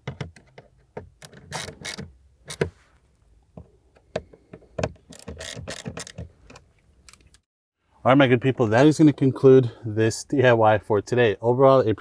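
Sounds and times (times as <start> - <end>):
hand ratchet clicking: 1.2 - 2.7, 5.1 - 6.2.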